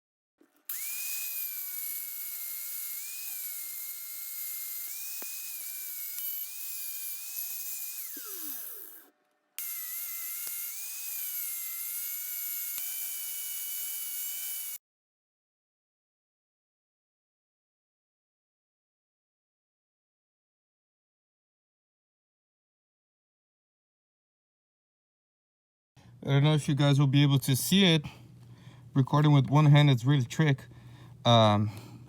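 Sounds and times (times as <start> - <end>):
rotary grinding tool whining: 0.4 - 14.8.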